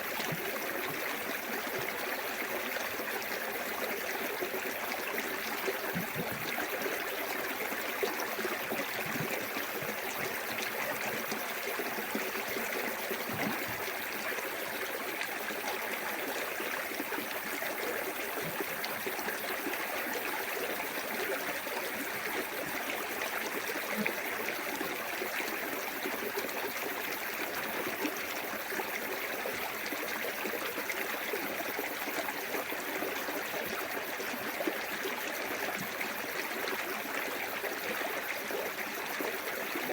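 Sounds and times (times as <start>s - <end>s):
water splashing over rocks: 12.8s - 14.5s.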